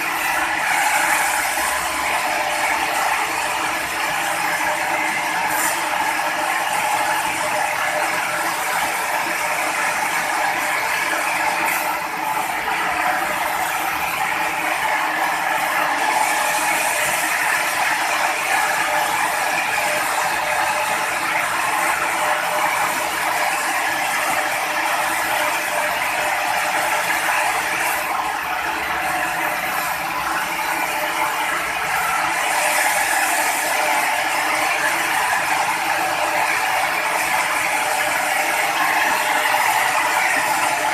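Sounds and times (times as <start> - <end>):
sawmill machinery running: 0.0 - 40.9.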